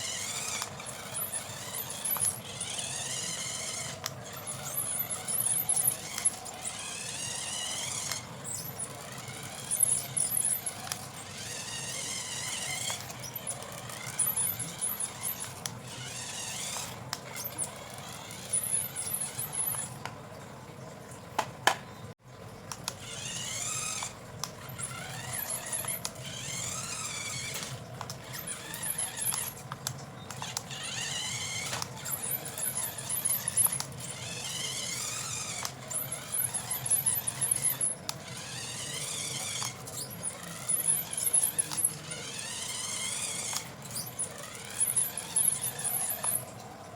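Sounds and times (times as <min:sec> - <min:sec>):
toy car electric motor whining: 0:00.0 - 0:20.1, 0:22.7 - 0:46.9.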